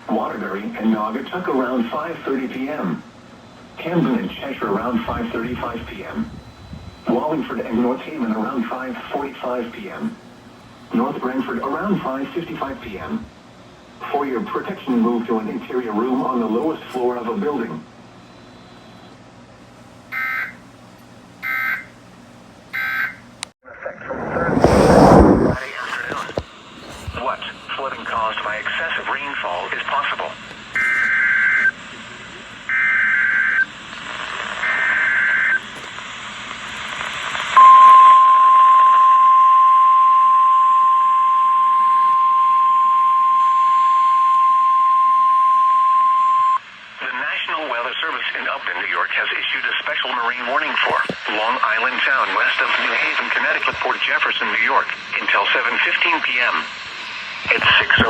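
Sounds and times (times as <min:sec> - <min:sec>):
radio hiss: 0:00.0 - 0:13.4, 0:14.0 - 0:17.8, 0:23.7 - 0:32.6, 0:33.4 - 0:37.6, 0:45.8 - 0:58.0
steady high alarm beep: 0:20.1 - 0:20.6, 0:21.4 - 0:21.9, 0:22.8 - 0:23.2, 0:37.6 - 0:46.6.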